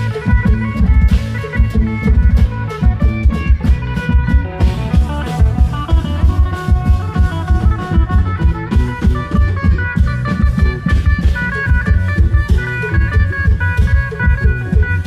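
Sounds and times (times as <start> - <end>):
fast drumming: 0.0 - 15.0
plucked string melody: 0.0 - 15.0.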